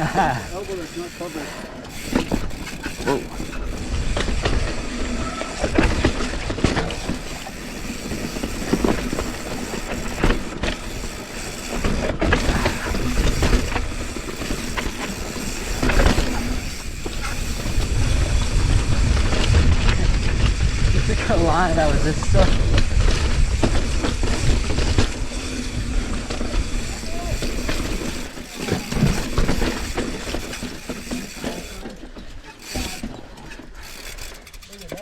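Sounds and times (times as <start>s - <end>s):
bike rattling: 0.0s - 35.0s
tyres grinding over dirt and rock: 0.0s - 35.0s
wind rushing over microphone: 16.4s - 27.8s.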